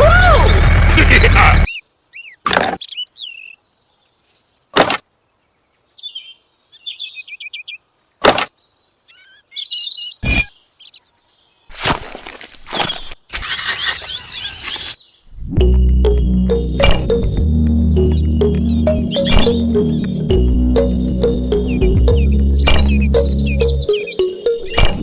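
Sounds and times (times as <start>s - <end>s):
birds chirping: 0.1s - 25.0s
music with steady bass: 15.5s - 23.9s
sharp clicks: 22.6s - 23.2s.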